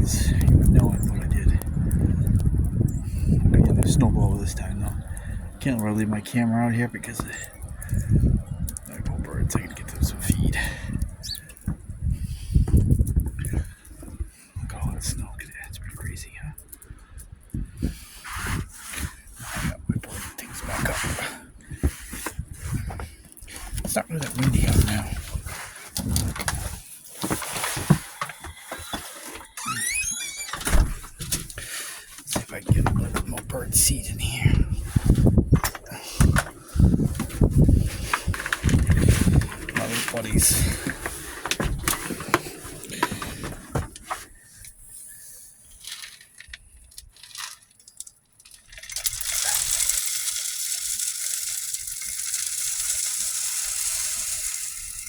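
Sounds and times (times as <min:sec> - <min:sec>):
wind rumbling on microphone: 0:00.0 - 0:29.0, 0:29.6 - 0:44.9
handling clicks and rustles: 0:00.0 - 0:45.0, 0:45.6 - 0:55.0
birdseed pouring into feeder: 0:48.6 - 0:55.0.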